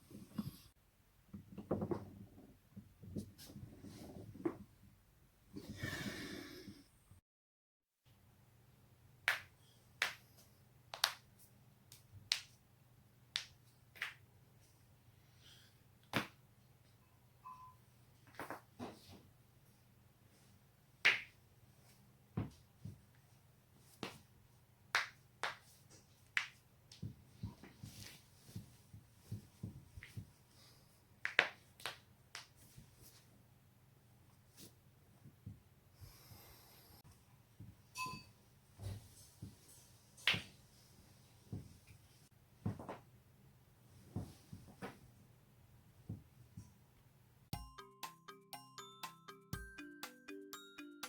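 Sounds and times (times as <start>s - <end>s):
person breathing: 5.6s - 6.9s, 36.0s - 37.0s.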